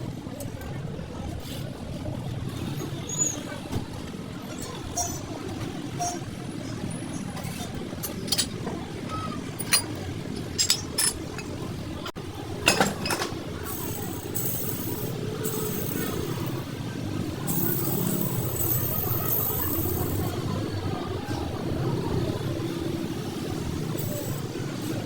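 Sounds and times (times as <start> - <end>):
metallic clinks of tools: 9.6 - 9.9, 10.6 - 11.5, 13.0 - 16.6, 17.5 - 20.4, 23.9 - 24.5.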